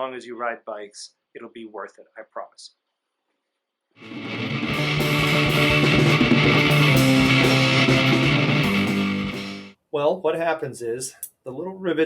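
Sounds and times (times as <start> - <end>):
rock music with electric guitar: 4.0 - 9.8.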